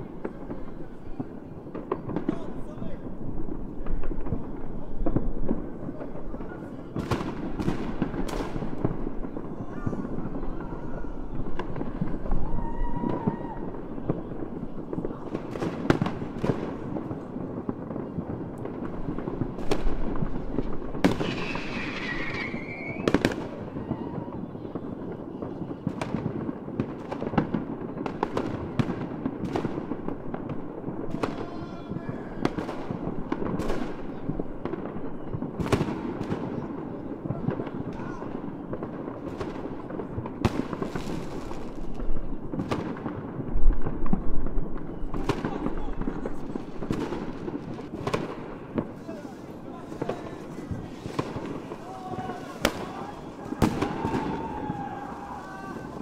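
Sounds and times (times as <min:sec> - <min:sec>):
fireworks bangs and crackles: 0:00.0 - 0:56.0
wavering firework whistle: 0:12.1 - 0:13.8, 0:21.1 - 0:24.6, 0:51.7 - 0:56.0.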